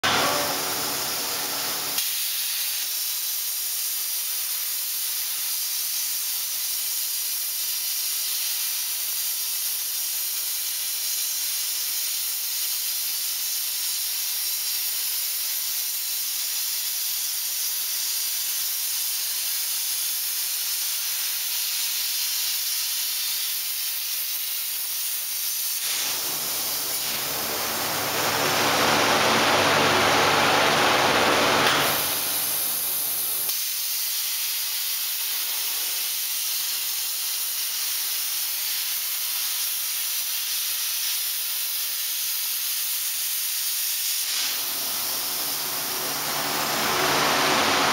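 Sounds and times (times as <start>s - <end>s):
high-pitched welding arc hiss: 0.0s - 28.8s, 31.6s - 47.9s
low machine hum: 25.9s - 33.4s.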